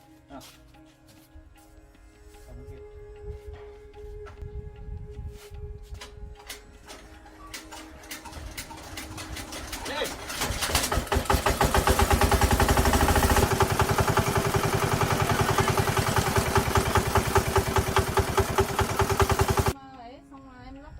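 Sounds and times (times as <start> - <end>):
engine idling: 6.8 - 19.8.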